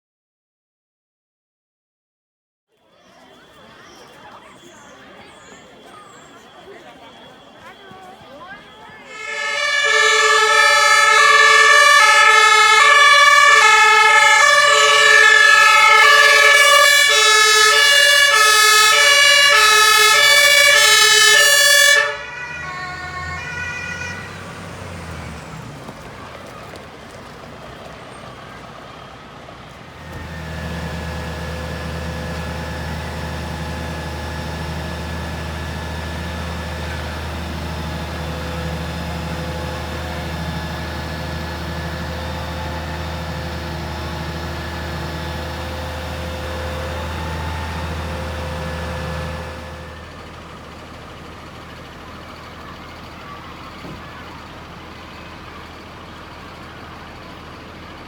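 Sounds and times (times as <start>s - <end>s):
diesel engine running: 2.8s - 58.0s.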